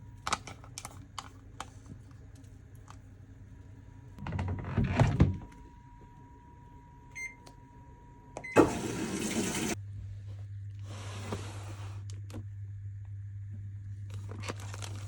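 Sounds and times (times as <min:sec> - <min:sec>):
washing machine low hum: 0:01.0 - 0:15.0
washing machine beeps: 0:05.7 - 0:09.8.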